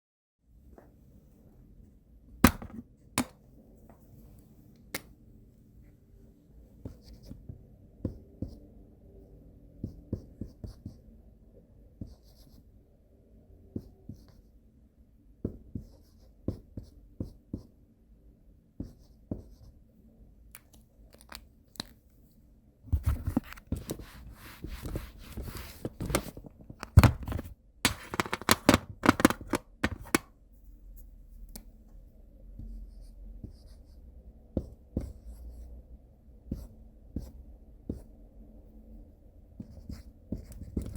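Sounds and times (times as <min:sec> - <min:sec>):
marker writing on whiteboard: 0:02.4 - 0:03.3, 0:06.8 - 0:08.7, 0:09.8 - 0:11.1, 0:11.9 - 0:12.7, 0:13.7 - 0:14.6, 0:15.4 - 0:17.8, 0:18.7 - 0:19.8, 0:23.0 - 0:26.4, 0:32.6 - 0:35.8, 0:36.4 - 0:38.2, 0:39.5 - 0:40.9.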